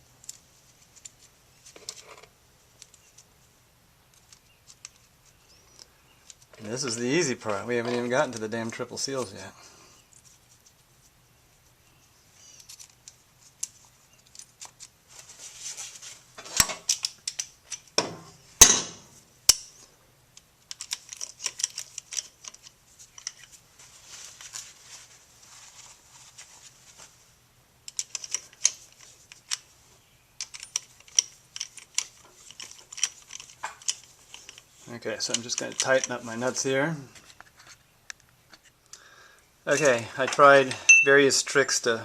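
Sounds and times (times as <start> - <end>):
metal parts and tools clinking: 20.7 - 23.6, 27.9 - 29.7, 30.4 - 36.6.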